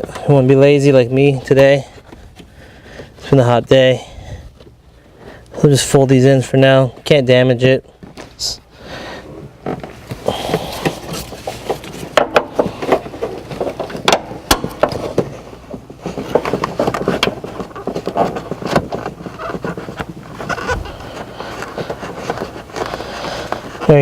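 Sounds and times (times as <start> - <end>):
carpet and plastic trim rustling: 7.0 - 24.0.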